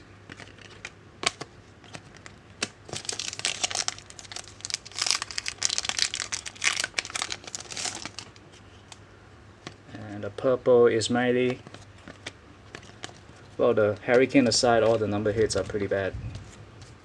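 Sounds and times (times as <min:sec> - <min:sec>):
foil wrapper crinkling and tearing: 0:00.3 - 0:08.4.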